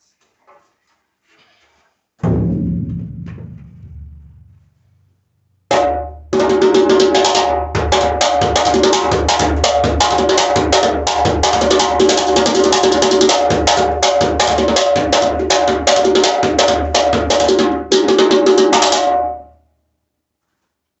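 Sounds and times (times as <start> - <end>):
hand drum rhythm: 2.2 - 4.5, 5.7 - 19.4.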